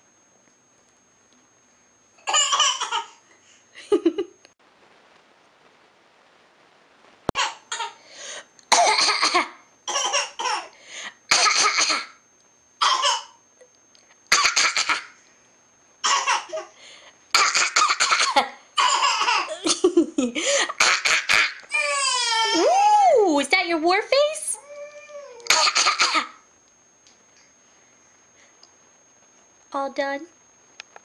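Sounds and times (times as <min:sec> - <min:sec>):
baby fake coughing and laughing: 0:02.2 - 0:03.2, 0:07.4 - 0:08.0, 0:08.7 - 0:12.2, 0:12.8 - 0:13.4, 0:14.3 - 0:15.2, 0:16.0 - 0:19.7, 0:20.6 - 0:22.2, 0:25.5 - 0:26.4.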